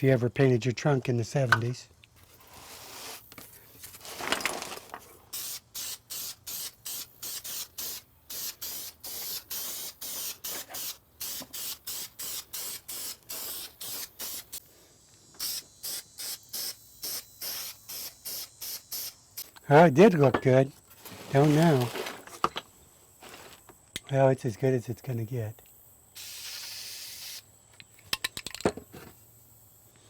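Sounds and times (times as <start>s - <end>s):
aerosol can spraying bursts: 5.3s - 14.6s, 15.4s - 19.5s, 26.2s - 27.4s.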